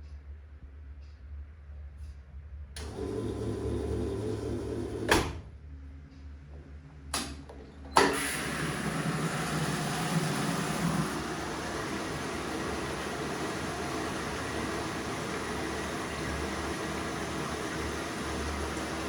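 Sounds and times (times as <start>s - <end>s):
washing machine running: 2.8s - 5.5s, 7.9s - 19.0s.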